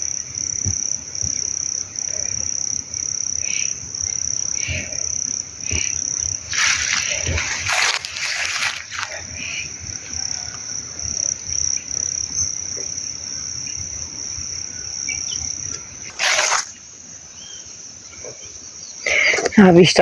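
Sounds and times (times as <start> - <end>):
insects buzzing: 0.0 - 19.9
short rushes of noise: 16.1 - 16.7.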